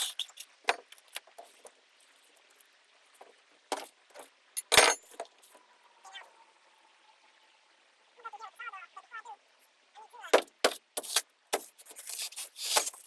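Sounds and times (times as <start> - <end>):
clinks and knocks of tools: 3.2 - 5.4.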